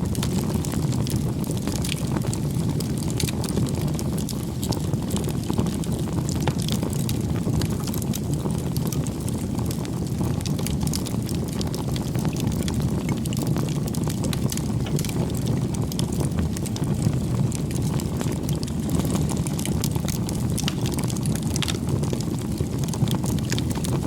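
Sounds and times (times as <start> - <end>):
bonfire rumble: 0.0 - 24.0
fire crackling and popping: 0.0 - 24.0.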